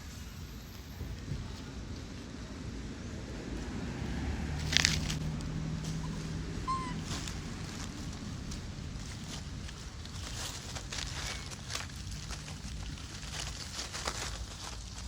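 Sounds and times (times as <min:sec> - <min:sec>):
high animal squeak: 0:05.9 - 0:07.6.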